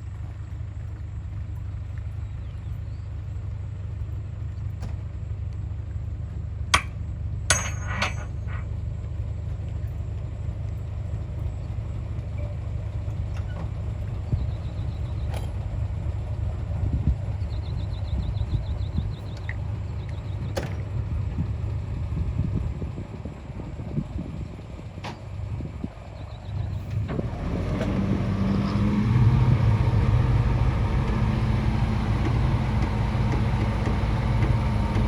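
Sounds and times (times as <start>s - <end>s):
diesel earthmoving machinery rumbling: 0.0s - 35.0s
sharp metal clanks: 6.8s - 8.7s.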